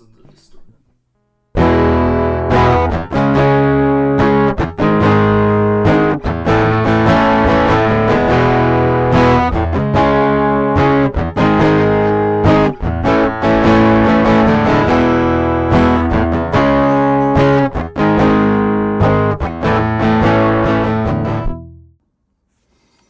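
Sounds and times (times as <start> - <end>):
distorted electric guitar: 1.6 - 21.8.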